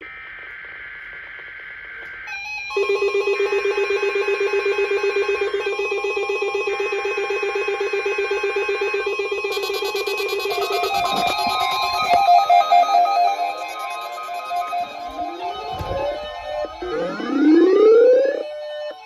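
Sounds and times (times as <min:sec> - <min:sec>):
screeching digital data burst: 0:09.4 - 0:18.4
harsh pulsing alert tone: 0:09.8 - 0:18.4.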